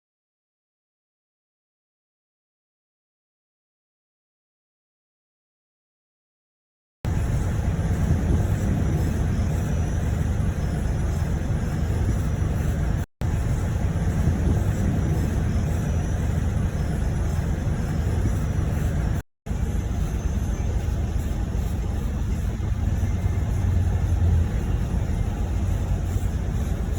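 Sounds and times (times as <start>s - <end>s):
minibus engine and road noise: 7.0s - 26.9s.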